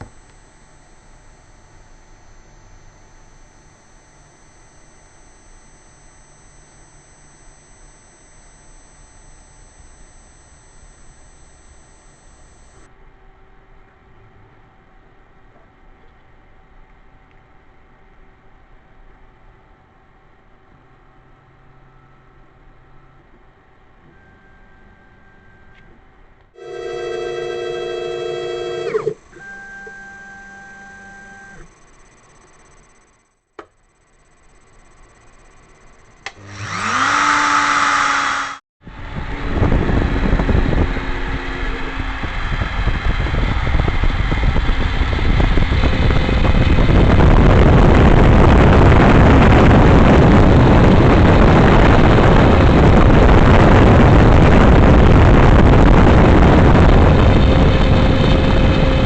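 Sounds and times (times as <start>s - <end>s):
router spindle whine: 0.0s - 12.9s, 23.9s - 59.0s
router cutting wood board: 36.4s - 42.4s.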